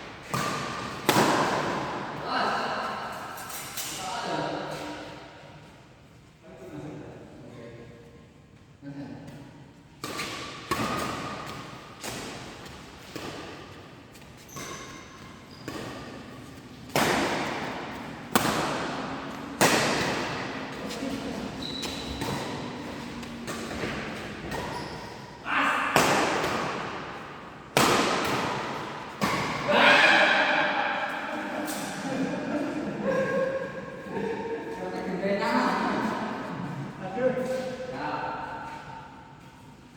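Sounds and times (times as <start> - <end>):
shuttlecock hits and thuds: 10.0 - 13.7, 14.4 - 24.8, 25.9 - 29.7.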